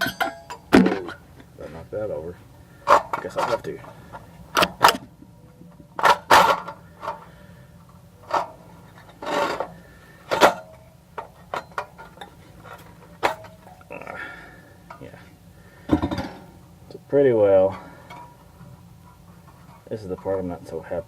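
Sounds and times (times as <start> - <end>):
metal scraping: 8.2 - 13.8.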